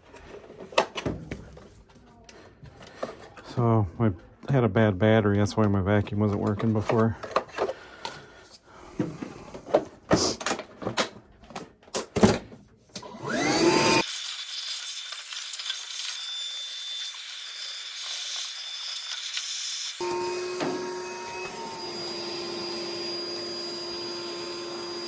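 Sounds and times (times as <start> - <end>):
vacuum motor whining: 13.0 - 14.0, 20.0 - 25.0.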